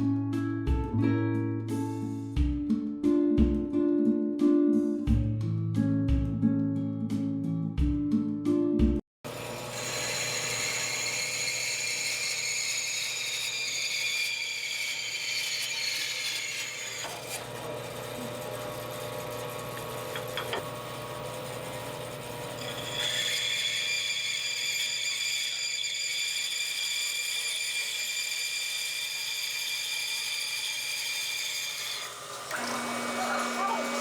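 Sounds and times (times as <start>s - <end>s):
lathe motor hum: 9.3s - 13.6s, 16.7s - 23.8s, 31.7s - 34.0s
turning tool scraping wood: 31.8s - 34.0s.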